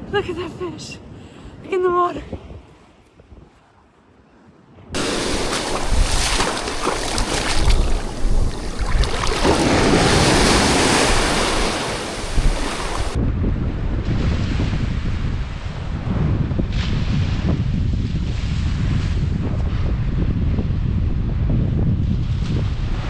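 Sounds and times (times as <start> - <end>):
ocean surf on sandy beach: 5.0 - 13.2
wind buffeting microphone: 5.0 - 23.0.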